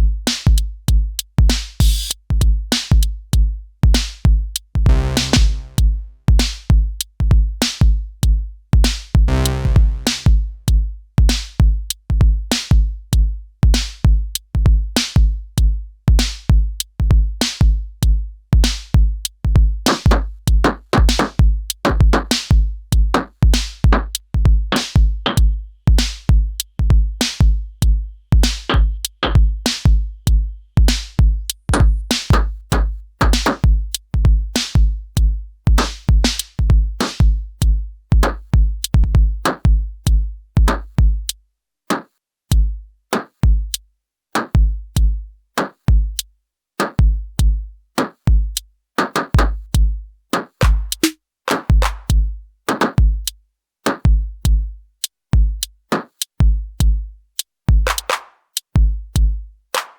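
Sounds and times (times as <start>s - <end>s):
deep kick drum: 0.0s - 41.3s, 42.5s - 42.8s, 43.4s - 43.8s, 44.6s - 45.2s, 45.9s - 46.2s, 47.0s - 47.7s, 48.3s - 48.6s, 49.4s - 50.0s, 50.6s - 51.1s, 51.7s - 52.4s, 53.0s - 53.3s, 54.1s - 54.8s, 55.4s - 55.6s, 56.4s - 57.1s, 57.7s - 58.1s, 58.8s - 59.4s
sharp hi-hat and percussion hits: 1.5s - 2.2s, 4.9s - 6.7s, 8.9s - 10.5s, 30.9s - 34.9s, 35.7s - 37.4s, 44.4s - 49.8s, 50.4s - 59.9s.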